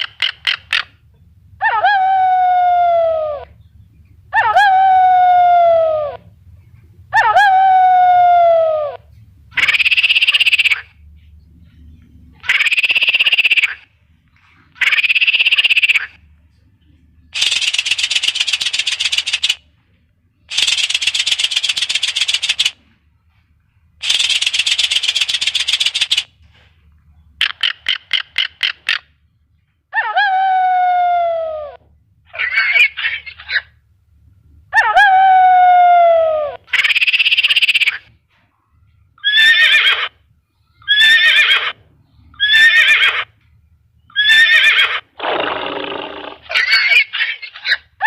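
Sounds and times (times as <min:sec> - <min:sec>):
frogs croaking: 0:09.6 - 0:10.9, 0:12.4 - 0:13.8, 0:14.8 - 0:16.1
falling pitched animal call: 0:39.2 - 0:40.2, 0:40.9 - 0:41.8, 0:42.4 - 0:43.4, 0:44.2 - 0:47.8
harsh short animal calls: 0:39.2 - 0:40.2, 0:40.8 - 0:43.4, 0:44.1 - 0:48.0
rasping pulsed croaks: 0:45.1 - 0:46.8.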